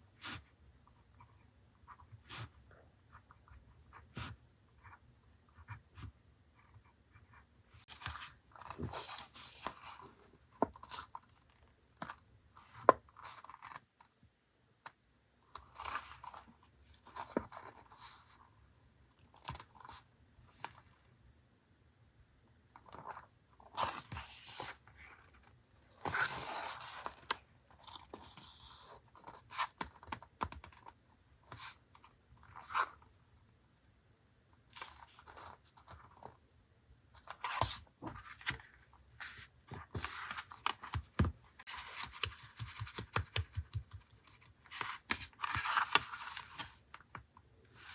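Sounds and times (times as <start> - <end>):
paper rustling and scraping: 26.0 - 27.3
small sharp taps and clicks: 42.1 - 44.4.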